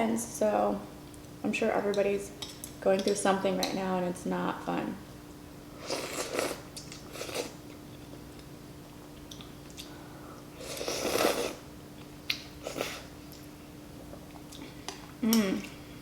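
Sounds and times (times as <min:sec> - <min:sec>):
chewing and mouth noise: 0:09.1 - 0:10.0.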